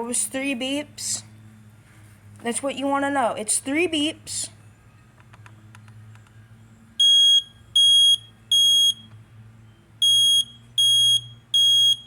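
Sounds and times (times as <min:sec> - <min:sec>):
smoke alarm beeping: 0:07.0 - 0:09.1, 0:10.0 - 0:12.0.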